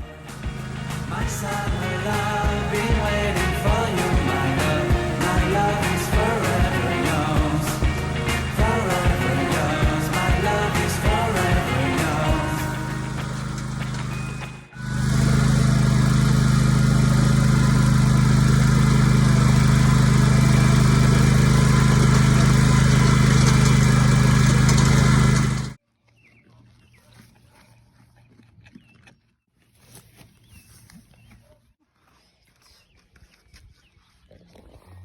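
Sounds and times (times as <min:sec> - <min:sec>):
engine running: 0:00.0 - 0:25.8.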